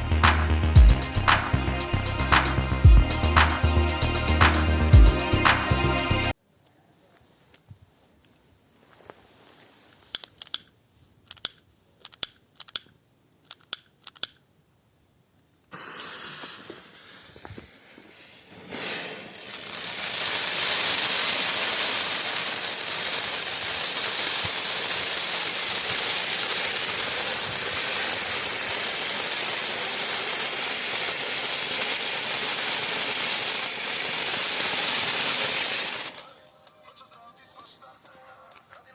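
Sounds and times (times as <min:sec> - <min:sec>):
fireworks fountain spray hiss: 0:00.0 - 0:06.4, 0:15.7 - 0:36.2
sharp clicks: 0:10.1 - 0:14.5.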